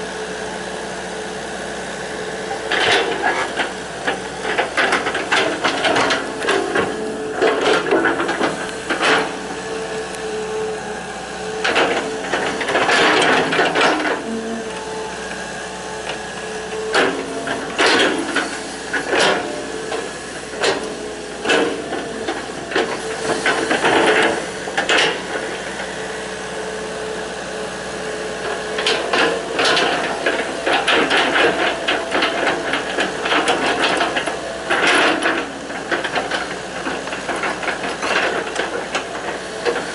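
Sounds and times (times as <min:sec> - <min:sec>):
excavator engine and hydraulics whine: 0:00.0 - 0:39.9
metal clanks and scrapes: 0:02.6 - 0:09.5, 0:11.5 - 0:14.9, 0:16.0 - 0:25.7, 0:28.4 - 0:39.9.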